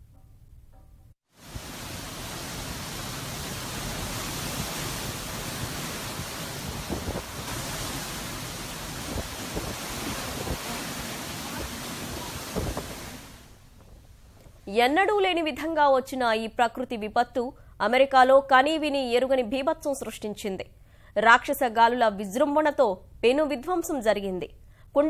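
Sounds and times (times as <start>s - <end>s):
strong wind rushing: 1.5s - 13.4s
wind buffeting microphone: 3.5s - 13.4s.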